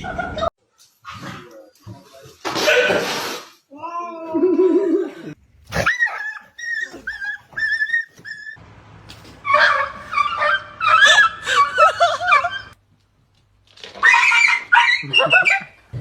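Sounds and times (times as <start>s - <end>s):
dog whining and yelping: 5.7s - 8.6s, 9.5s - 12.8s.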